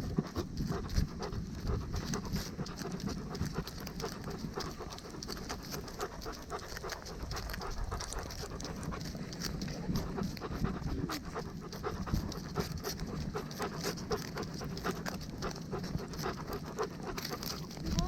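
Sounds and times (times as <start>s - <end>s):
dog panting: 0.0s - 18.0s
short ticks and rustles: 0.0s - 18.0s.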